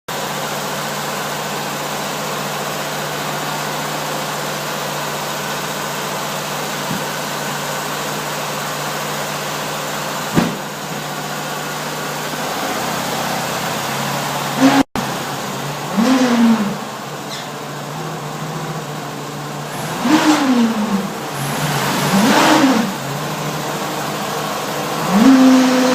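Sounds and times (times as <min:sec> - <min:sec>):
sharp knock: 0:10.3 - 0:10.7.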